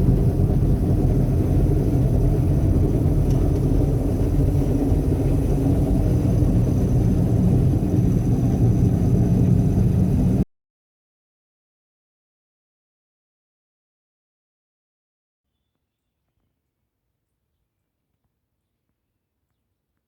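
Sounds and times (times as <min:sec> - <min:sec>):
combine harvester rumble: 0:00.0 - 0:10.4.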